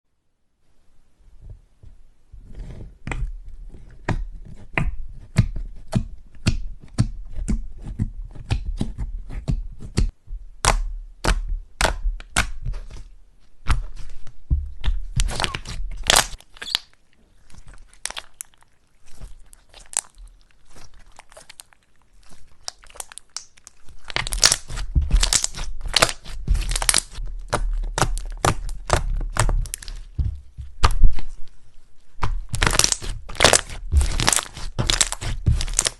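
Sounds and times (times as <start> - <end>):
slime clicking and popping: 14.8 - 17.0, 22.6 - 30.2, 32.2 - 35.9.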